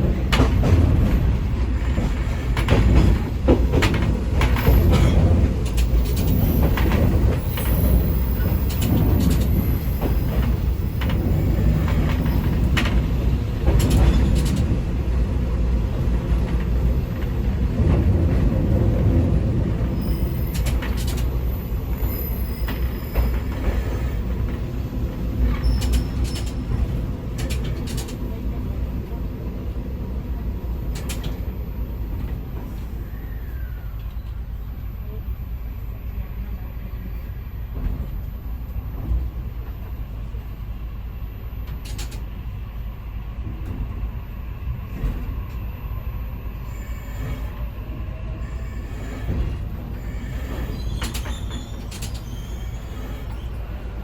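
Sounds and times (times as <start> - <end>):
diesel railcar engine rumble: 0.0 - 54.0
wheel clicks over rail joints: 20.4 - 21.4, 50.2 - 52.3
thin wheel squeals: 50.0 - 53.6.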